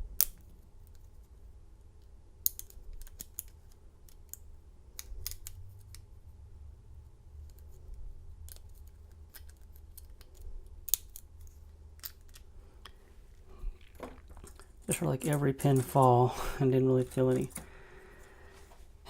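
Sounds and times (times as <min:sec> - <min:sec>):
lock pick metallic clicks: 0:05.0 - 0:05.9.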